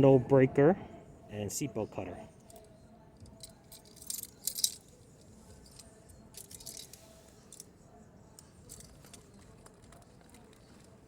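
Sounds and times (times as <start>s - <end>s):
tools and pouch clicking and rustling: 2.4s - 11.0s.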